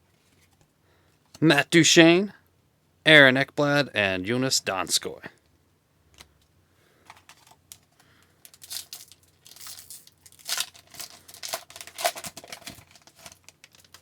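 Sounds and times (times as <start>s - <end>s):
foil wrapper tearing and crinkling: 8.4s - 14.0s.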